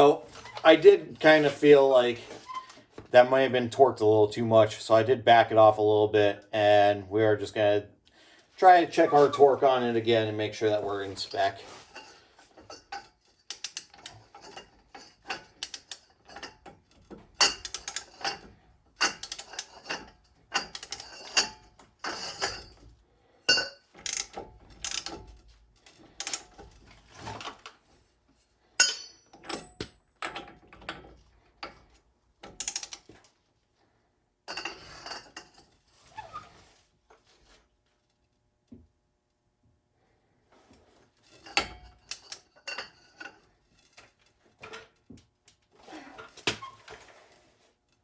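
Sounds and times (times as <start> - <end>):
ratchet wrench clicks: 32.6 - 33.1.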